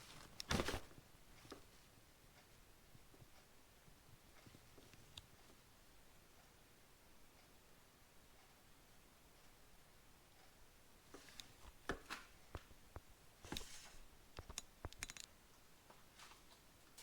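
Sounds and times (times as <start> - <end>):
faint clicks and light knocks: 0.1 - 5.7, 10.4 - 17.0.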